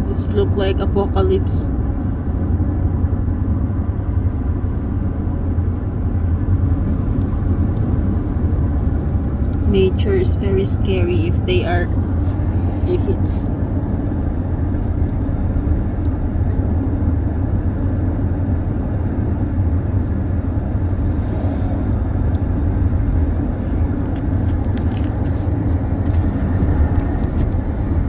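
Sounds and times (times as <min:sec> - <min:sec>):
car engine and road rumble: 0:00.0 - 0:28.0.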